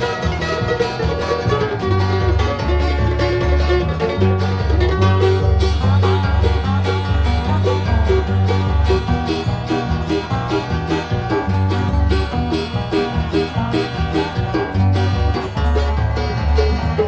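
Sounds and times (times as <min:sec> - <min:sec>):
banjo picking rapid rolls: 0:00.0 - 0:17.0
strummed acoustic guitar: 0:00.0 - 0:17.0
walking bass: 0:00.0 - 0:17.0.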